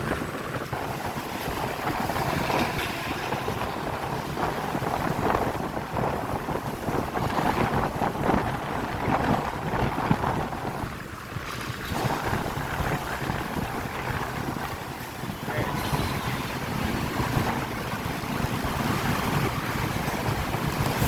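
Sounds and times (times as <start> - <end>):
bus engine with snoring exhaust: 0.0 - 21.0
wind noise on microphone: 0.0 - 21.0.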